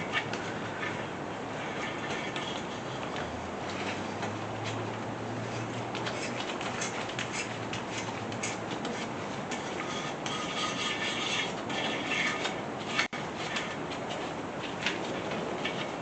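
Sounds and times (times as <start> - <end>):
metal-on-metal scraping: 0.0 - 16.0.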